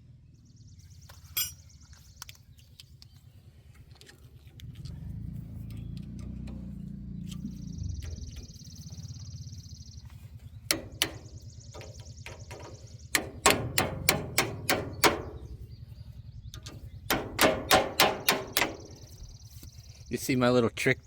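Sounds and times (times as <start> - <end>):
hammer pounding metal rod: 10.7 - 11.9, 12.5 - 15.5, 17.1 - 19.0.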